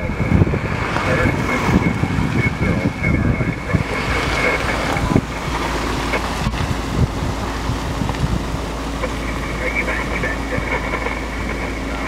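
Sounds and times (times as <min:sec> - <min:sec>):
gusty wind buffeting microphone: 0:00.0 - 0:12.0.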